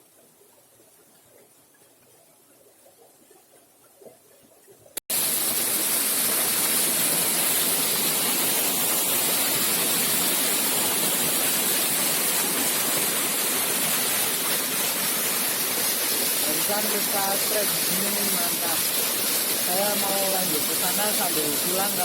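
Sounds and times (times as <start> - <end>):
river water rushing: 6.6 - 22.0.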